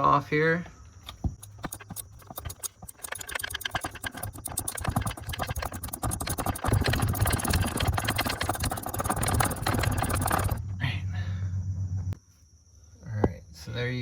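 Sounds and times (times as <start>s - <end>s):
ratchet wrench clicking: 1.4s - 10.6s.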